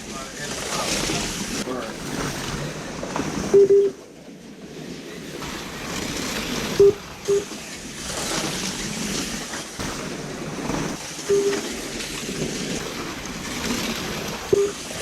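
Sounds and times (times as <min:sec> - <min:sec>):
slot cars whirring: 0:00.0 - 0:15.0
short beep: 0:03.5 - 0:04.0, 0:06.8 - 0:07.5, 0:11.3 - 0:11.6, 0:14.5 - 0:14.8.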